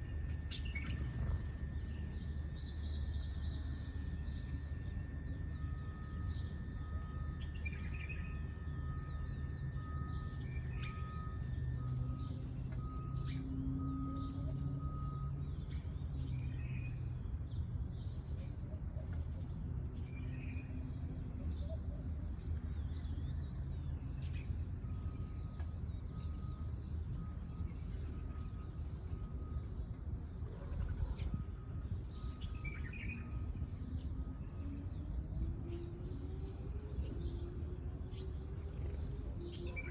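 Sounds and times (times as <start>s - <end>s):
low background rumble: 0.0s - 5.3s
sparrows chirping: 0.0s - 18.6s, 19.3s - 39.9s.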